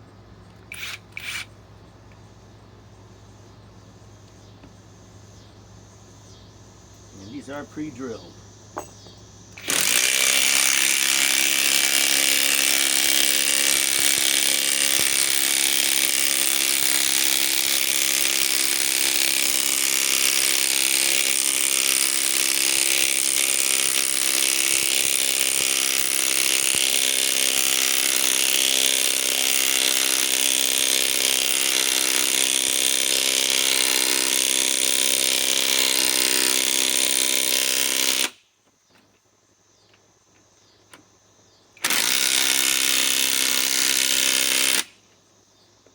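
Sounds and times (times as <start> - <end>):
impact wrench hammering: 8.8 - 31.7.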